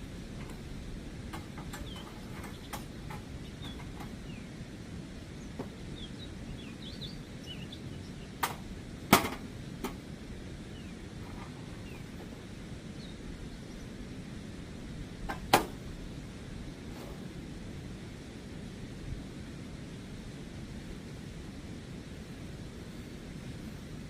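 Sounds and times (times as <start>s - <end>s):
steady low rumble: 0.0s - 24.0s
faint bird chirps: 1.6s - 4.5s, 5.4s - 8.4s.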